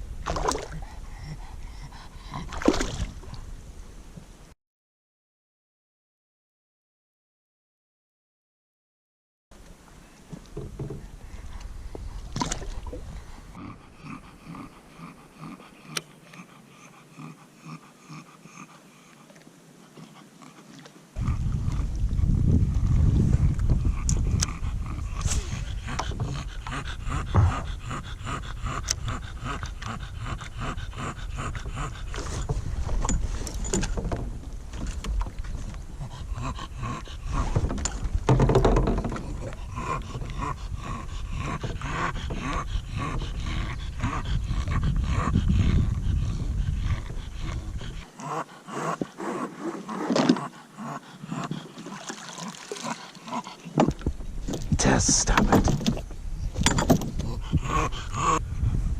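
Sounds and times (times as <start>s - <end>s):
dog breathing and stirring: 20.0s - 58.9s
low rumble: 21.2s - 32.0s.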